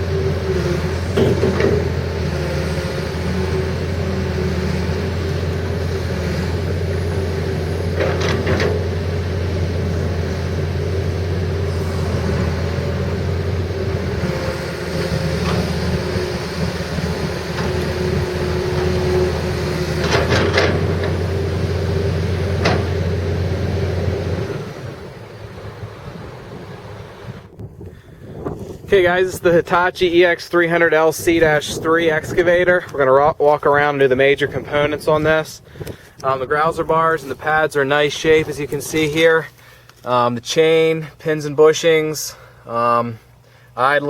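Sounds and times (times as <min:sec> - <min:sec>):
excavator diesel engine running: 0:00.0 - 0:27.6.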